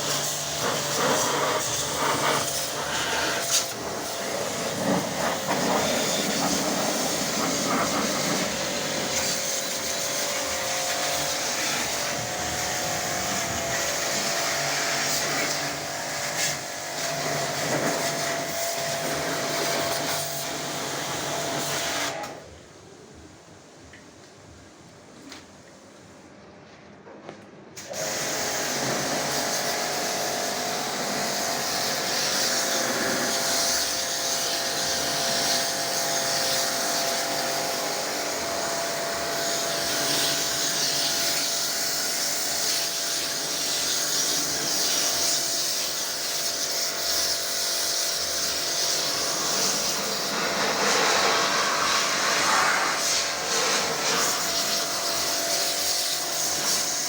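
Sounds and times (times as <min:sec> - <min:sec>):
water spray hiss: 0:00.0 - 0:20.3, 0:27.8 - 0:57.0
pressure washer motor hum: 0:00.0 - 0:22.1, 0:27.8 - 0:57.0.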